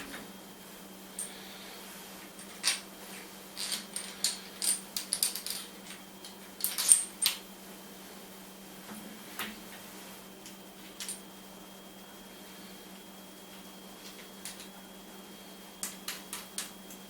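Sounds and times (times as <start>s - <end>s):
metal parts clinking together: 2.4s - 2.8s, 3.6s - 7.4s.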